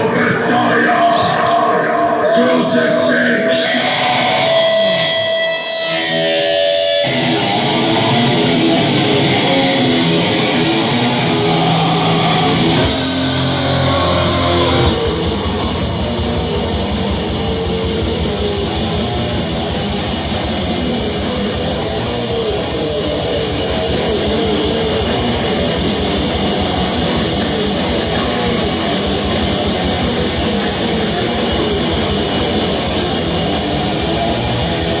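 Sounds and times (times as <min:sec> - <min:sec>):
distorted guitar: 0:00.0 - 0:35.0
extreme metal music: 0:00.0 - 0:35.0
fast dense drumming: 0:08.8 - 0:35.0.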